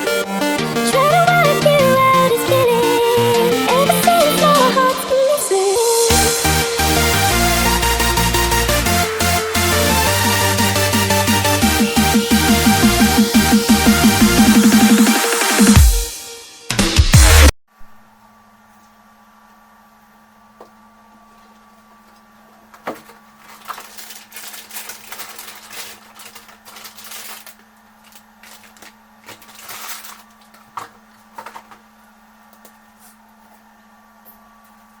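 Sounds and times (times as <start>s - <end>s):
low electrical hum: 17.7s - 35.0s.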